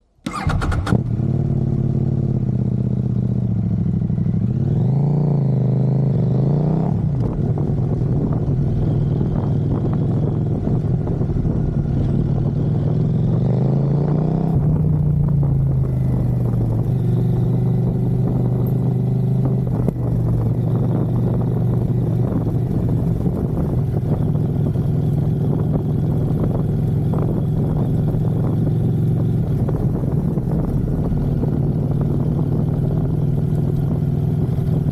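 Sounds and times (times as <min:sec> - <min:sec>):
motorcycle engine starting and idling: 0:00.2 - 0:06.1, 0:14.4 - 0:34.9
motorcycle engine revving: 0:00.3 - 0:34.9.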